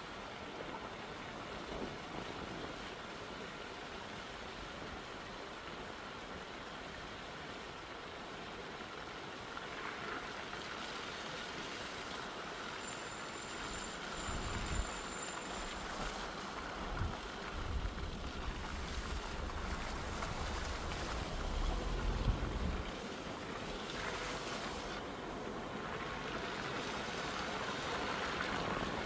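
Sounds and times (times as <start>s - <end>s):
steady outdoor hiss: 0.0s - 29.0s
wind buffeting microphone: 16.8s - 23.0s.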